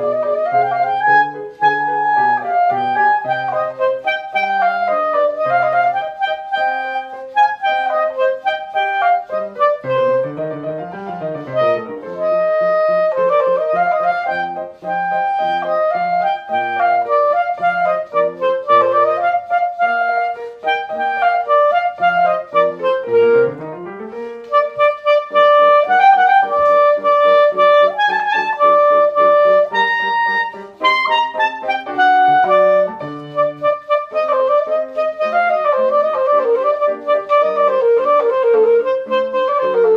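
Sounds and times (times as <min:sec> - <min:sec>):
clarinet melody: 0:00.0 - 0:39.9
piano accompaniment: 0:00.0 - 0:39.9.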